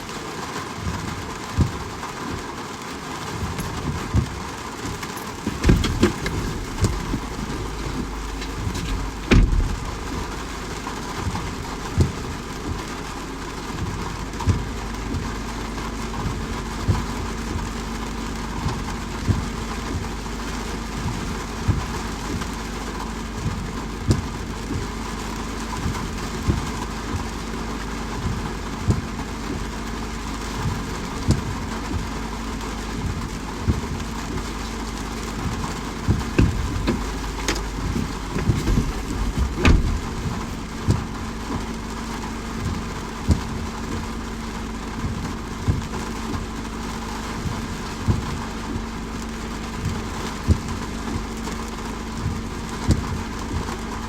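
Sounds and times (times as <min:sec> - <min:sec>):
steady rain: 0:00.0 - 0:54.0
low steady hum: 0:03.0 - 0:54.0
drips tapping: 0:03.4 - 0:20.2, 0:33.4 - 0:46.1.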